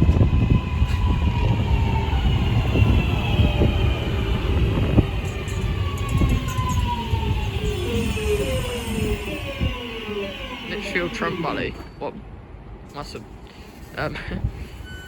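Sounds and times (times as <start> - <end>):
train traction motors whining: 0.0 - 11.9
wheels rumbling on rail: 0.0 - 15.0.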